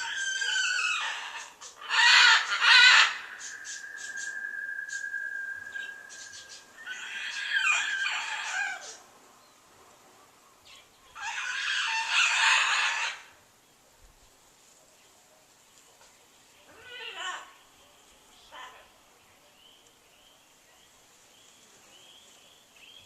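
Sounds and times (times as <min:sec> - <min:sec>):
large bird calling loudly: 0:00.0 - 0:09.0
whistle-like bird tone: 0:03.0 - 0:07.8.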